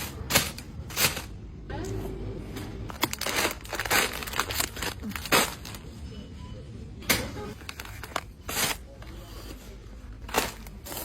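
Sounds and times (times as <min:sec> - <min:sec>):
packaging rustling: 0:02.9 - 0:05.9.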